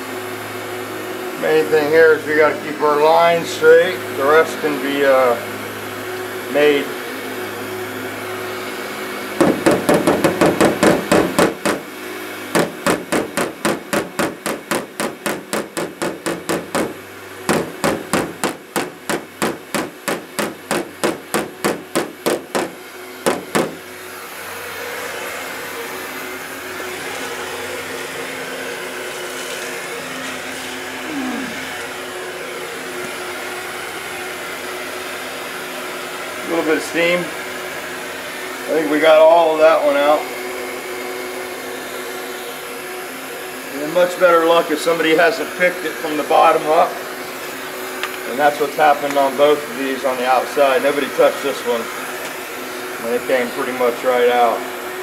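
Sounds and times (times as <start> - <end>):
heat gun blowing: 0.0 - 55.0
hammer tapping on metal: 9.4 - 11.9, 12.6 - 23.8.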